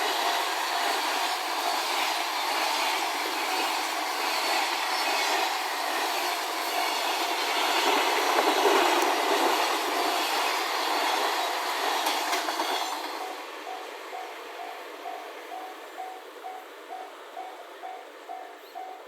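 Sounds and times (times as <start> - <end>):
freight train wheels clattering: 0.1 - 16.6
level crossing alarm: 13.2 - 19.0.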